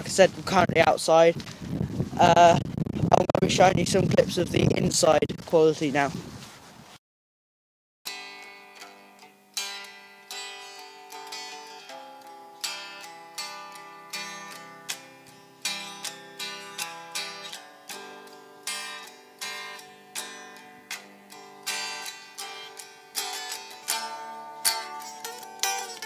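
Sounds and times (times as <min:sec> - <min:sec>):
plucked string melody: 0:08.1 - 0:26.0.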